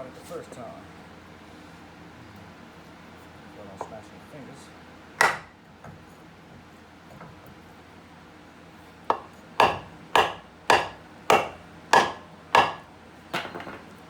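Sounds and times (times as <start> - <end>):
hammer striking wooden block: 5.2 - 5.5, 9.1 - 13.8.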